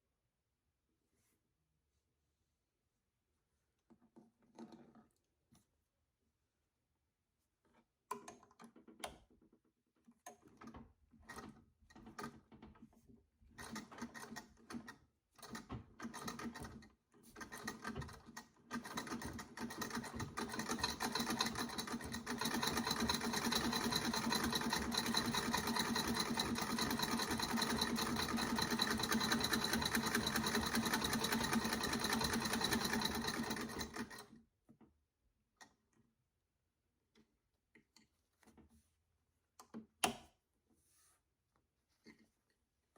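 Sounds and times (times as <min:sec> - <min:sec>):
treadle sewing machine sewing: 0:13.6 - 0:34.4.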